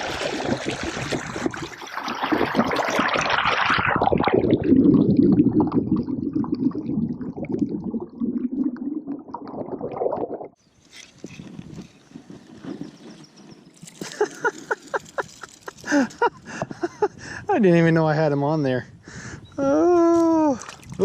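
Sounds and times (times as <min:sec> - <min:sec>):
water splashing and gurgling: 0:00.0 - 0:10.6, 0:20.0 - 0:21.0.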